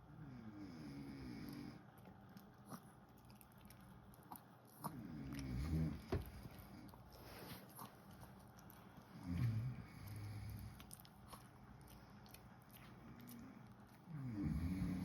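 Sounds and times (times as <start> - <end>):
pet snoring: 4.8 - 6.4, 9.2 - 10.8, 13.3 - 15.0.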